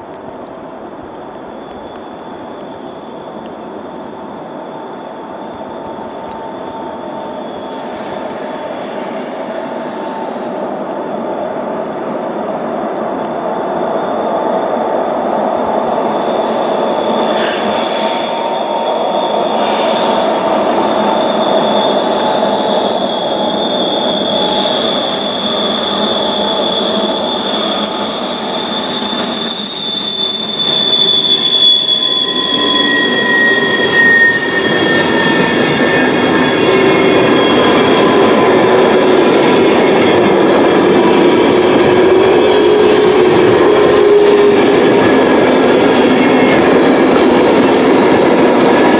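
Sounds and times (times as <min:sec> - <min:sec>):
train wheels squealing on rails: 0:00.0 - 0:48.9
train rolling rumble: 0:15.3 - 0:48.9.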